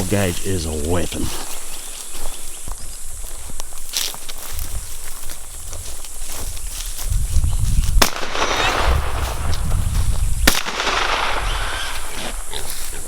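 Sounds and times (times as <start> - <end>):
shotgun shots: 8.0 - 9.6, 10.4 - 12.3.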